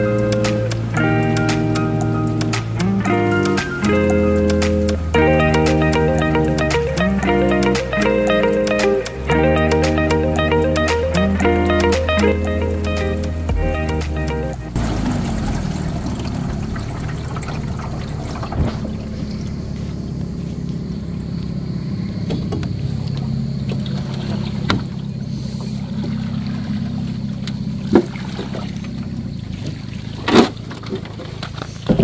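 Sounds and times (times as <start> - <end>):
boat motor humming: 0.0 - 32.0
water lapping: 14.7 - 21.4, 22.9 - 32.0.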